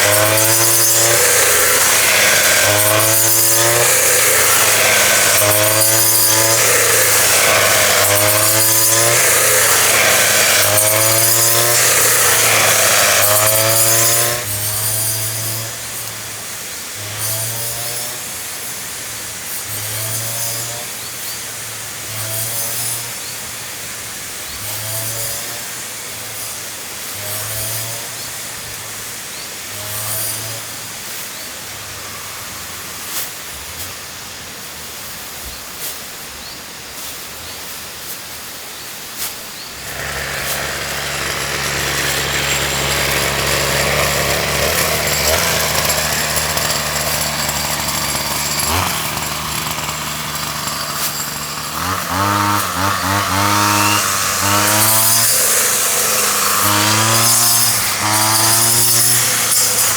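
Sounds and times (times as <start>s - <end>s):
small motor running: 0.0s - 16.1s, 39.8s - 59.9s.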